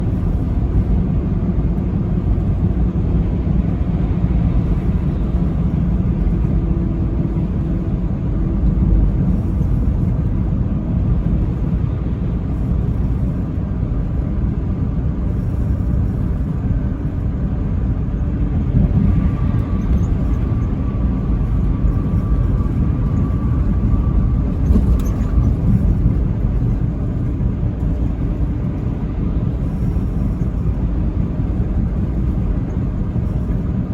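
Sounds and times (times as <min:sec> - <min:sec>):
truck engine and road rumble: 0:00.0 - 0:33.9
thin whine: 0:15.2 - 0:33.8.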